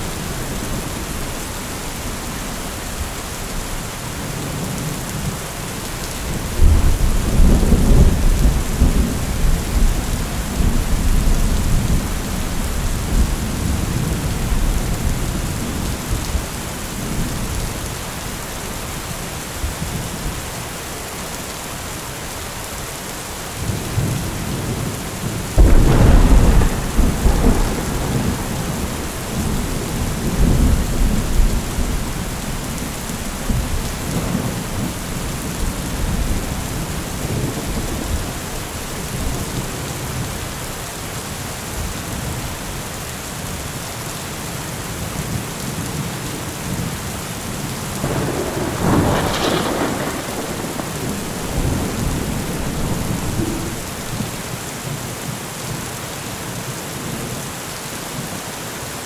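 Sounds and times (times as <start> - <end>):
heavy rain falling: 0.0 - 59.0
rolling thunder: 6.3 - 17.7, 23.9 - 40.4, 47.9 - 54.6.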